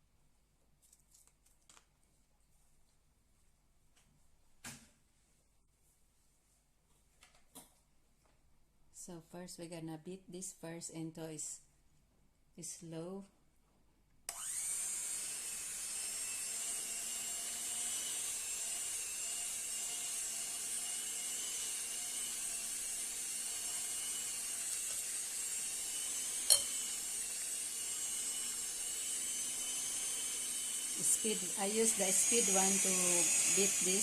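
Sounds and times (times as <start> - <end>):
electric mixer running: 14.3 - 34.0.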